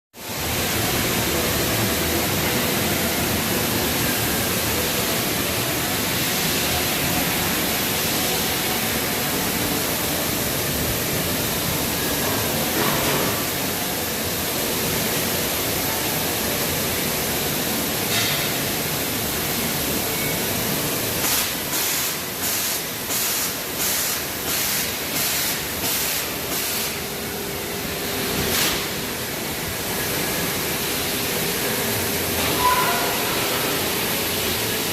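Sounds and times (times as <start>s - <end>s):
laser cutter hissing: 20.9s - 27.1s.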